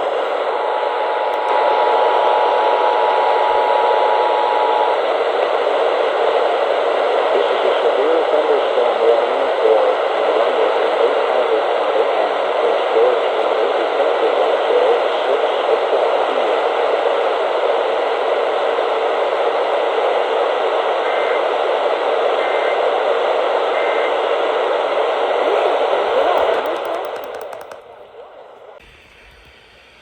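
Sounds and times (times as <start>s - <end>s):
radio static hiss: 7.0s - 17.6s, 21.0s - 21.6s, 22.2s - 22.9s, 24.8s - 27.7s.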